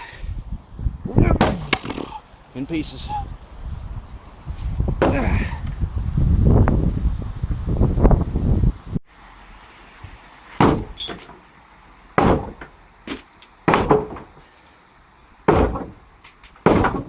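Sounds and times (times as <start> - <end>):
heavy blows on wooden framing: 1.1 - 2.2, 4.6 - 5.8, 10.6 - 11.4, 12.2 - 14.4, 15.4 - 17.0.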